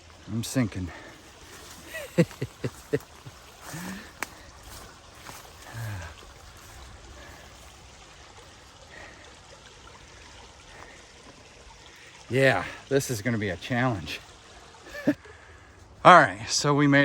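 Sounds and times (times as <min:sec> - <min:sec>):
water trickling: 0:00.0 - 0:15.9
boots squelching in mud: 0:00.9 - 0:07.8
low grunts of effort: 0:05.6 - 0:06.3.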